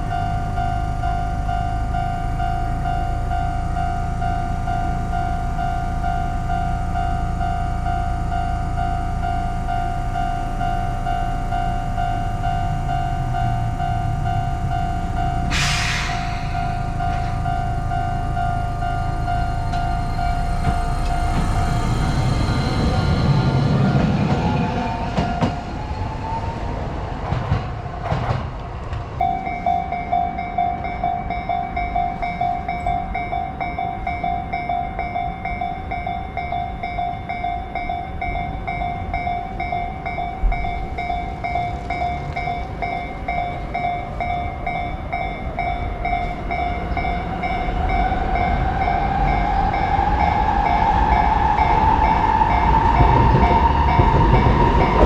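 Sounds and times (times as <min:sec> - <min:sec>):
level-crossing electronic bell: 0:00.0 - 0:25.9, 0:29.2 - 0:55.0
train approaching with whine: 0:00.0 - 0:55.0.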